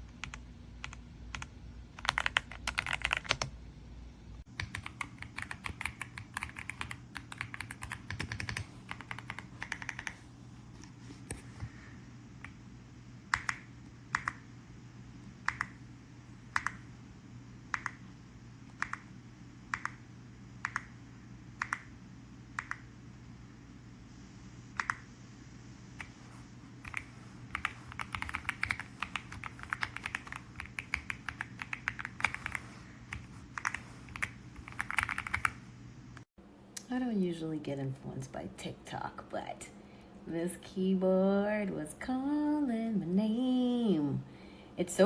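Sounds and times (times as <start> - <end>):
low steady hum: 0.0 - 45.0
mechanical keyboard typing: 0.1 - 3.5, 4.5 - 10.2, 13.3 - 14.4, 15.5 - 15.8, 16.5 - 16.9, 24.8 - 25.0, 26.8 - 35.6.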